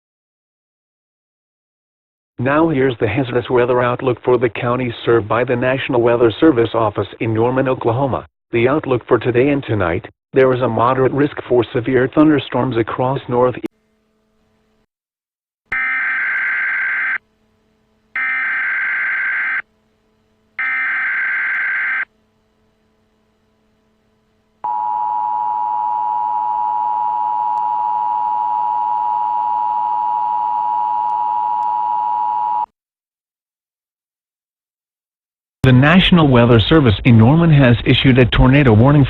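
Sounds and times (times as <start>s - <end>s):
buzzing data bursts: 20.6s - 22.1s.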